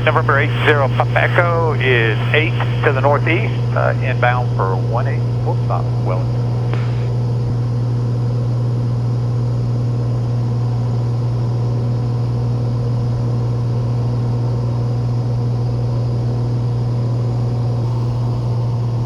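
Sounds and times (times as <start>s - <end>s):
airplane engine droning: 0.0s - 7.8s, 17.8s - 19.0s.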